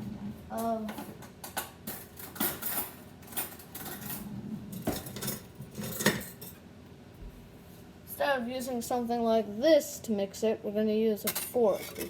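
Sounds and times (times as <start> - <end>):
utensils and dishes clinking: 0.9 - 6.6, 11.2 - 12.0.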